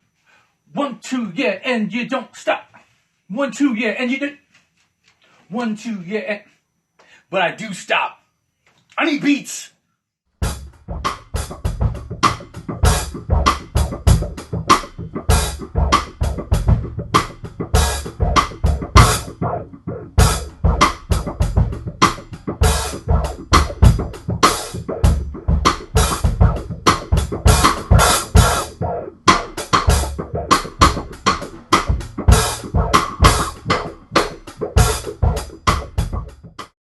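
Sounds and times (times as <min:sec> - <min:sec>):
drum kit with analog effects: 0:10.4 - 0:36.8.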